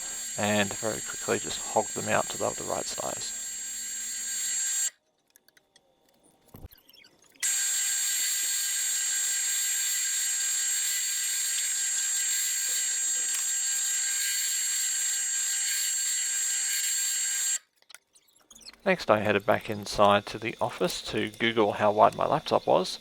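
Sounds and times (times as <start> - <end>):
drill press motor whine: 0.0 - 4.9, 7.4 - 17.6.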